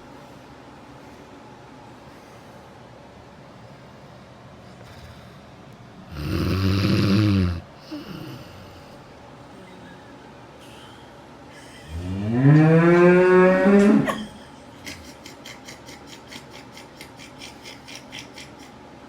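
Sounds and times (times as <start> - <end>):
man snoring loudly: 6.1 - 8.4.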